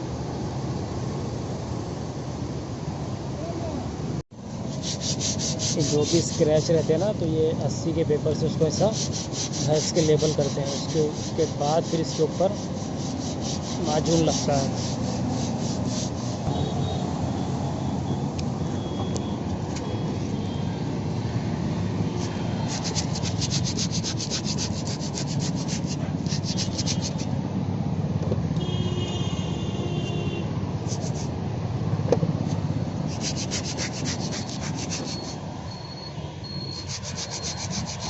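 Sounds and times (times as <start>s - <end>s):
sandpaper scraping metal panel: 4.5s - 7.2s, 8.4s - 16.5s, 22.2s - 27.3s, 30.8s - 31.3s, 33.1s - 35.4s, 36.7s - 38.0s.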